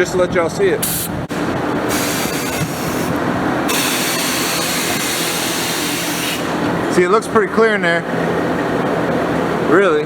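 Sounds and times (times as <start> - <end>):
compressed air hissing from hose: 0.8 - 1.2, 1.9 - 6.6.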